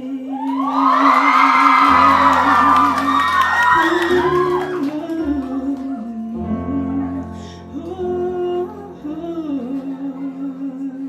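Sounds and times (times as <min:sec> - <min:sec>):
woman singing wordless notes: 0:00.0 - 0:11.0.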